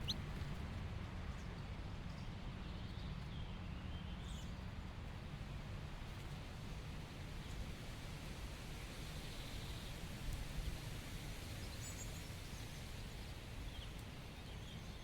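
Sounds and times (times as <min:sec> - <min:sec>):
small bird chirps: 0:00.0 - 0:00.2.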